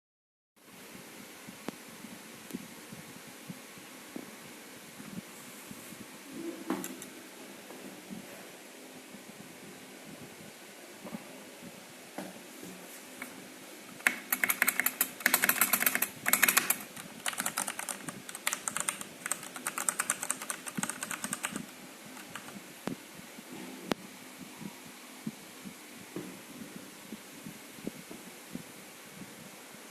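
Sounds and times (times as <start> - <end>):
mechanical keyboard typing: 14.0 - 22.6.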